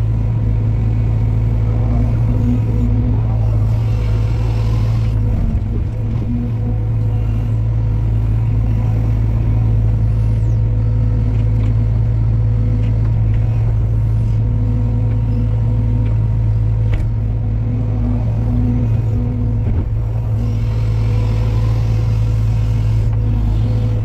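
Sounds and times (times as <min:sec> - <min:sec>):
heavy machine engine humming: 0:00.0 - 0:24.0.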